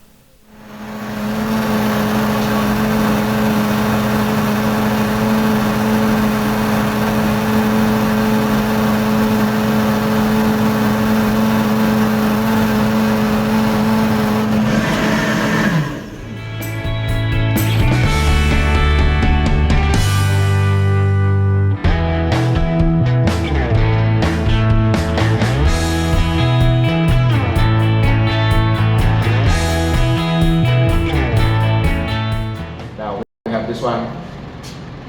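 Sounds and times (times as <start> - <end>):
electric blender running: 0.5 - 16.8.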